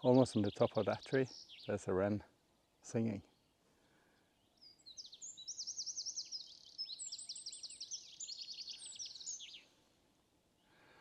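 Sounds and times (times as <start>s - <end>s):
wren singing high trills: 0.0s - 1.9s, 4.4s - 9.8s.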